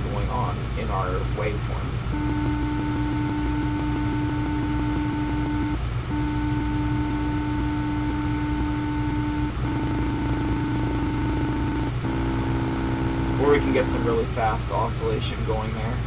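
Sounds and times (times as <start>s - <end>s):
steady low hum: 0.0s - 16.0s
steady electronic tone: 2.0s - 14.8s.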